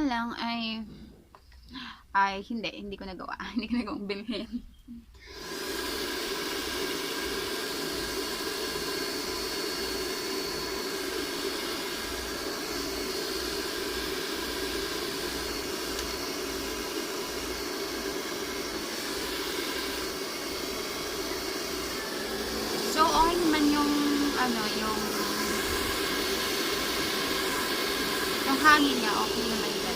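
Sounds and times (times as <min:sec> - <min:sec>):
hair dryer running: 0:05.2 - 0:29.9.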